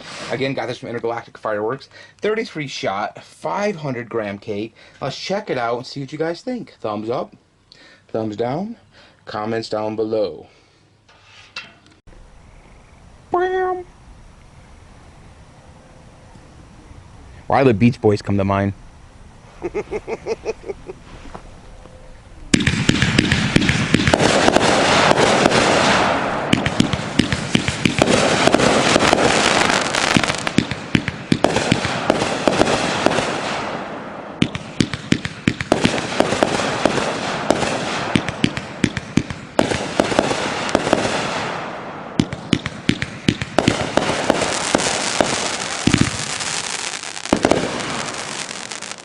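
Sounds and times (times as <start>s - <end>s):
fireworks shots bursting: 22.5s - 49.0s.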